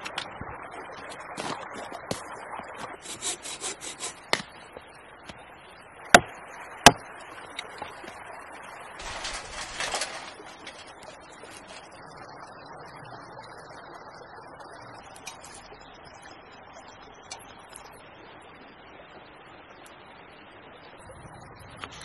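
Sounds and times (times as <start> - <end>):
hand saw rasping through wood: 3.0 - 4.4.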